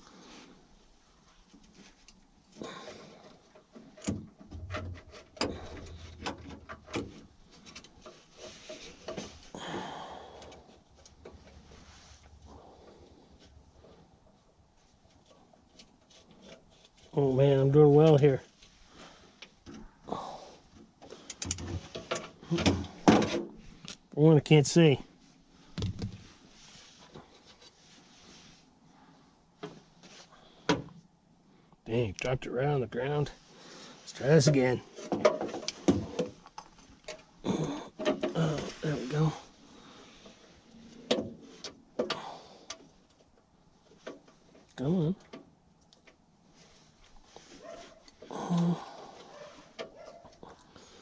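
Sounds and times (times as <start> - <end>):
hands and tools clicking on hardware: 21.0 - 23.4
short rustle: 25.0 - 30.6, 46.4 - 48.3.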